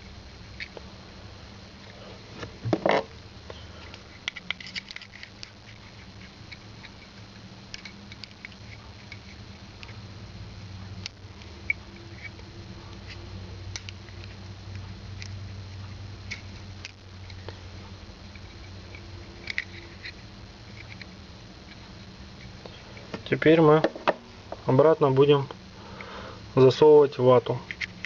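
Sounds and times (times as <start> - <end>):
lighter parts clicking and tapping: 13.7 - 14.4.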